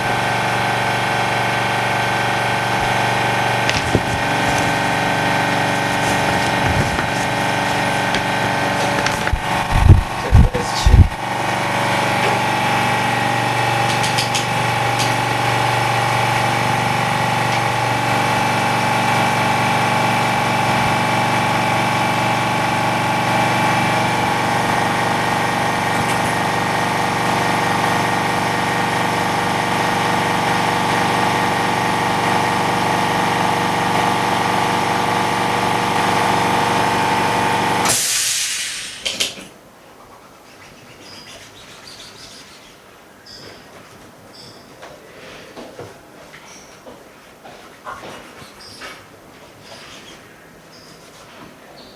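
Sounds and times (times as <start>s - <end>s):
machine humming: 0.0s - 38.0s
hiss of released air: 37.8s - 39.2s.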